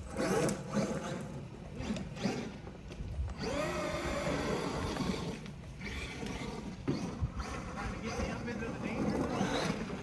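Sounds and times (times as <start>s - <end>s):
electric motor whining: 3.3s - 10.0s.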